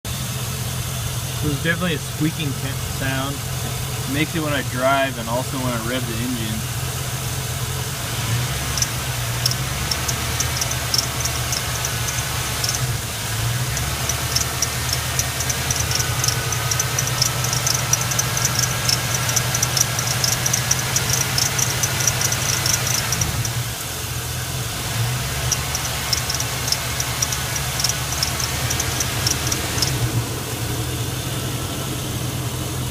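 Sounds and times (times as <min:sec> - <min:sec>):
engine running: 0:00.1 - 0:32.9
rapid high-pitched squeak: 0:08.8 - 0:12.9, 0:13.7 - 0:23.6, 0:25.5 - 0:30.0.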